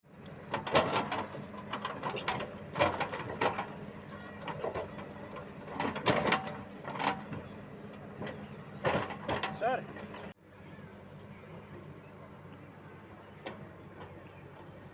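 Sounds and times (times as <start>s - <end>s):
low engine hum: 0.0s - 14.9s
metallic clanks and knocks: 0.5s - 10.3s.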